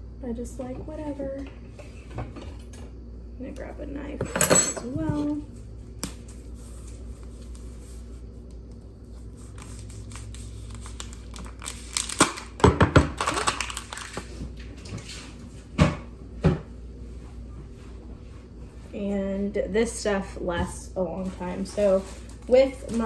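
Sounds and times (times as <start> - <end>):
packaging crinkling: 9.4 - 14.4.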